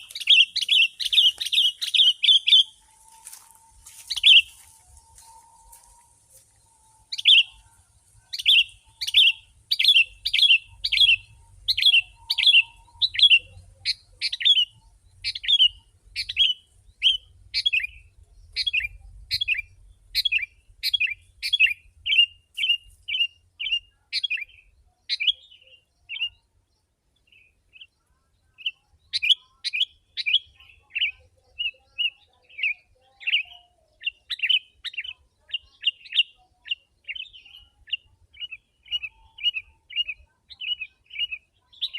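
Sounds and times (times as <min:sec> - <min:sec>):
bulbul chirping: 0:00.0 - 0:05.9, 0:07.0 - 0:07.6.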